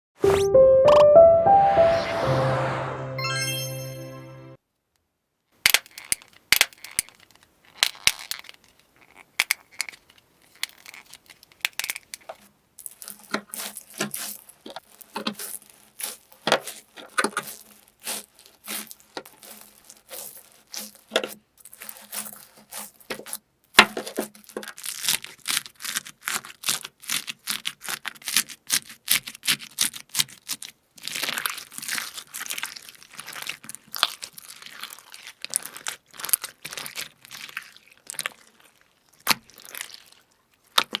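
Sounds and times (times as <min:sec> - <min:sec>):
crunchy slime crackling and popping: 0:12.8 - 0:41.0.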